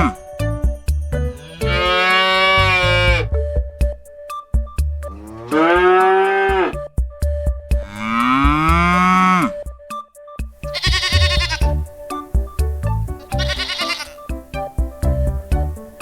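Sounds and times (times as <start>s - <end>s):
light music with steady beat: 0.0s - 16.0s
cow mooing: 1.4s - 3.3s, 5.1s - 6.8s, 7.8s - 9.6s, 13.3s - 14.2s
quavering bleat: 1.4s - 3.3s, 10.7s - 11.8s, 13.3s - 14.3s.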